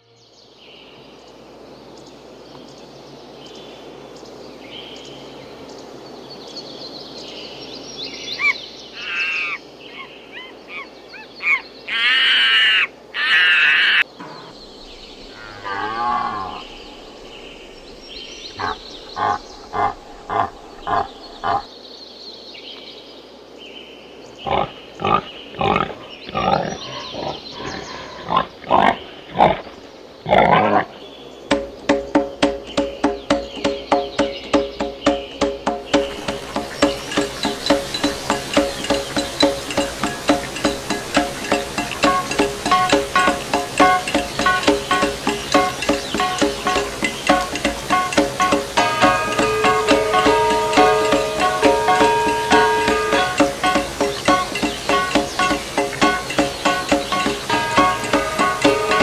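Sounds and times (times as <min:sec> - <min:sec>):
wavering animal cries: 0:08.4 - 0:14.6, 0:18.6 - 0:21.7
steady background noise: 0:12.8 - 0:59.0
bronze gongs struck rhythmically: 0:31.5 - 0:59.0.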